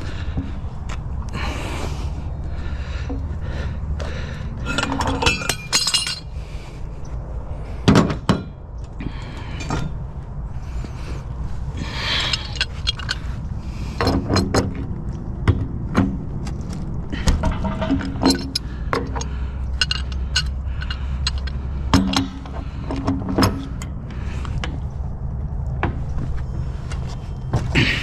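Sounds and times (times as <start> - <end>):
low rumble: 0.0 - 28.0
hand tools clinking on metal: 4.6 - 6.3, 11.9 - 13.4, 17.4 - 22.6.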